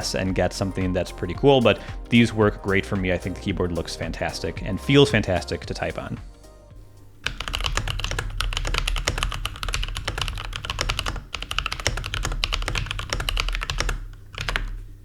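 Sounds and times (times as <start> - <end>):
fast mechanical keyboard typing: 7.2 - 15.0.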